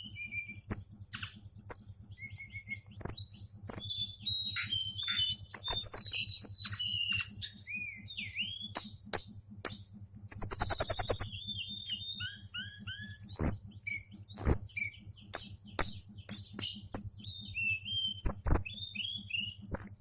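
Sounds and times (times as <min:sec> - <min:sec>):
songbird singing: 0:00.0 - 0:09.2.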